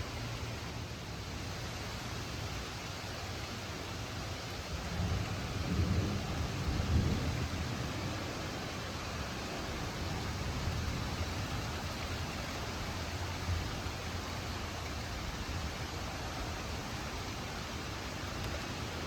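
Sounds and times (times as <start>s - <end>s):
steady rain hissing: 0.0s - 19.0s
low thunder rumble: 4.8s - 11.7s.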